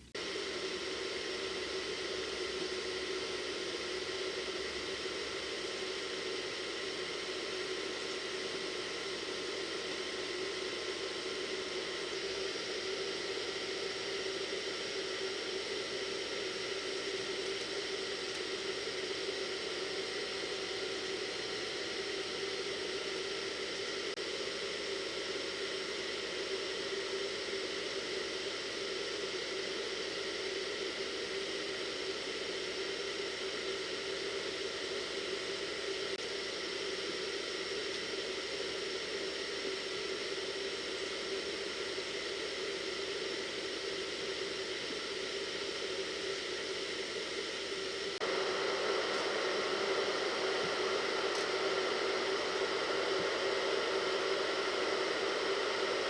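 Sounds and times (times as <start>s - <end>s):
hair dryer blowing: 0.0s - 56.0s.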